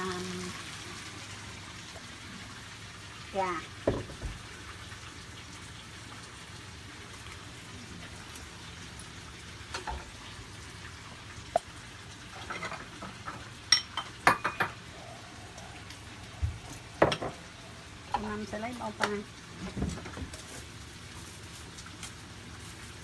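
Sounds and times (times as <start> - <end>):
fish sizzling in pan: 0.0 - 23.0
kitchen utensils clattering: 12.3 - 14.8.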